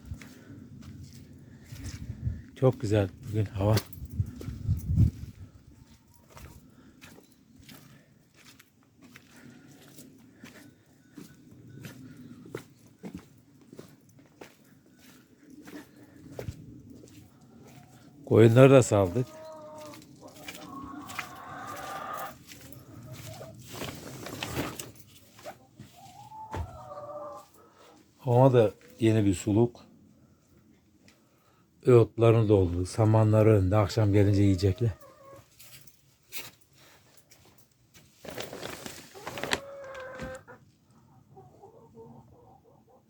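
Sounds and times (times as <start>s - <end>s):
chickens clucking: 17.2s - 24.7s, 25.3s - 29.2s, 34.0s - 35.6s, 39.2s - 43.0s
rustling scraping noise: 19.9s - 26.2s, 35.4s - 40.4s.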